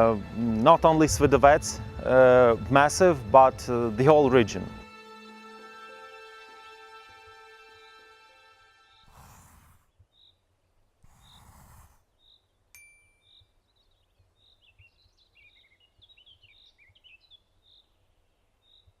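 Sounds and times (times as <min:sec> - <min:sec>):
bird chirping: 0:09.9 - 0:19.0.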